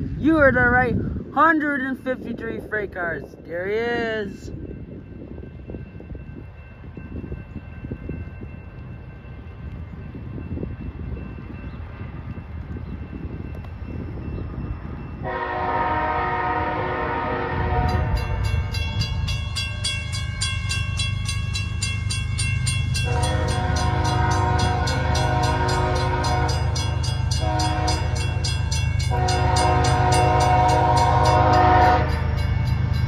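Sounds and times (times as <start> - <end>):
low rumble of diesel locomotives: 0.0 - 33.0
locomotive air horn blasts: 15.2 - 18.3, 23.0 - 28.3, 29.0 - 32.2.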